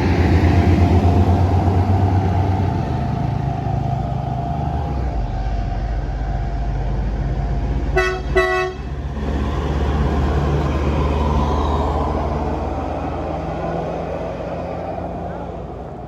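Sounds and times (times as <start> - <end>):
heavy vehicle engine droning: 0.0 - 16.0
bus horn toots: 7.9 - 9.0.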